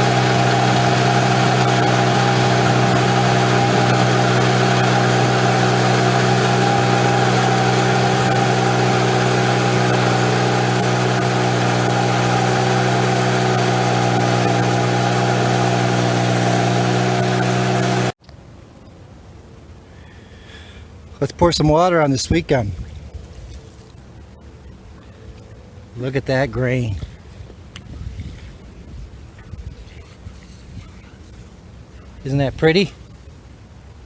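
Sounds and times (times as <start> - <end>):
bandsaw sawmill engine running: 0.0 - 18.2.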